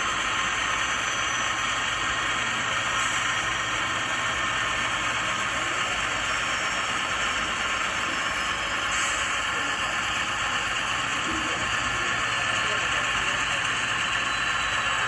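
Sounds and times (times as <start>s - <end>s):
diesel engine through small speaker: 0.0s - 15.0s.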